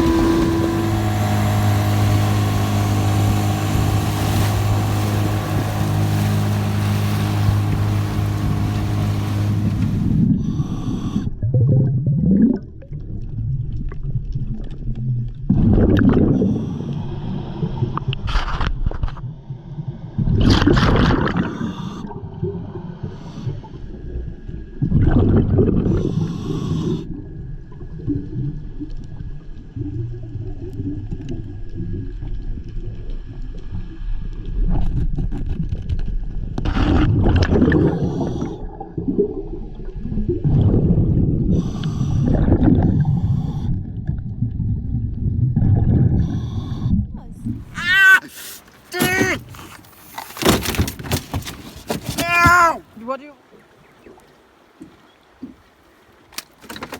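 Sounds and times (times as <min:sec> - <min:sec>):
boat engine running: 0:00.0 - 0:10.5, 0:47.3 - 0:55.6
water gurgling: 0:00.0 - 0:10.6
water rushing bursts: 0:00.0 - 0:10.6, 0:47.4 - 0:56.6.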